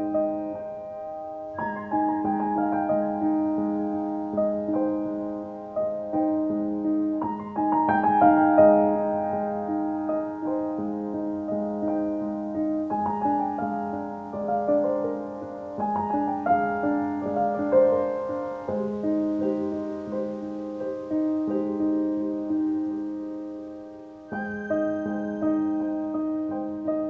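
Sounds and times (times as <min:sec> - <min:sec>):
gentle piano melody: 0:00.0 - 0:27.0.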